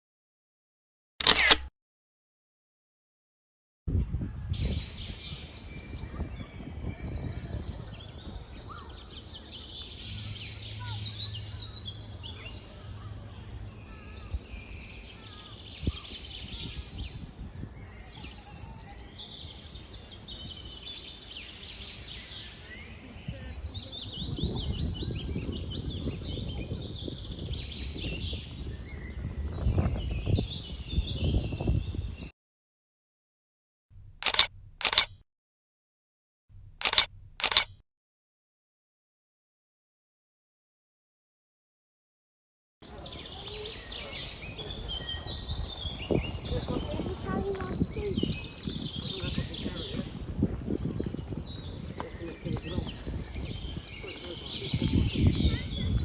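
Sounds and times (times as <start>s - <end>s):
songbirds singing and chirping: 4.6s - 32.3s, 42.8s - 56.0s.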